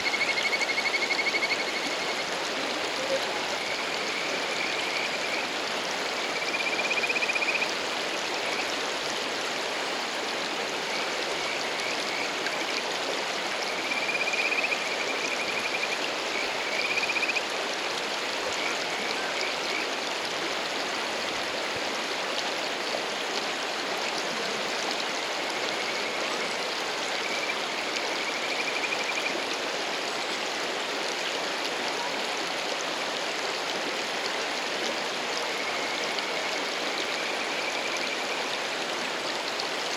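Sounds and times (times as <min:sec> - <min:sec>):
frogs trilling: 0:00.0 - 0:08.8, 0:13.6 - 0:17.5, 0:25.2 - 0:29.4, 0:35.4 - 0:38.5
rushing stream: 0:00.0 - 0:39.9.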